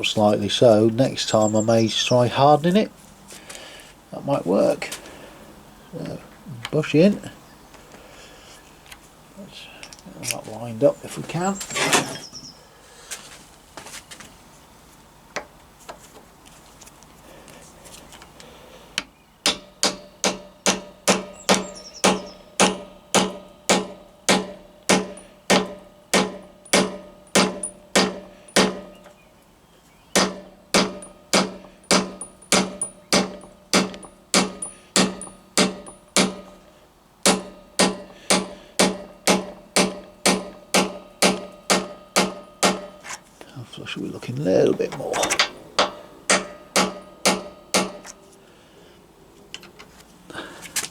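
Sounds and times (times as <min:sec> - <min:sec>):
ringing hammer blows on metal: 0:19.4 - 0:29.0, 0:37.3 - 0:43.0.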